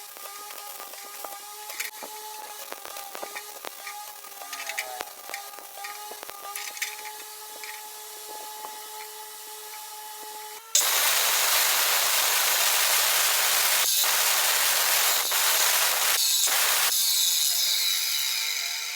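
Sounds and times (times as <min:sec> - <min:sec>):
power tool machine hum: 0:00.0 - 0:18.9
harsh hissing noise: 0:10.8 - 0:17.0.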